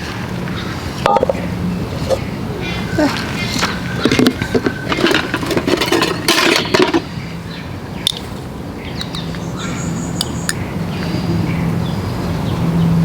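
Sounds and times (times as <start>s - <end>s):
dishes clinking: 4.0s - 7.0s.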